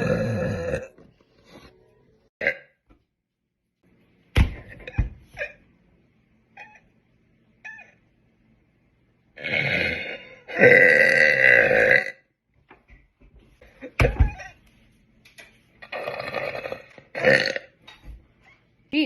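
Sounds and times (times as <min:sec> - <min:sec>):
woman burping loudly: 0:00.0 - 0:01.0, 0:02.4 - 0:02.8, 0:09.4 - 0:12.3, 0:15.8 - 0:17.8.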